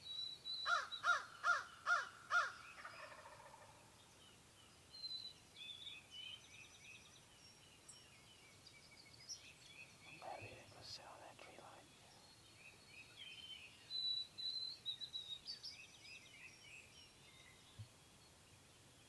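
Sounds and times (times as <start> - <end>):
small birds chirping: 4.0 - 18.4.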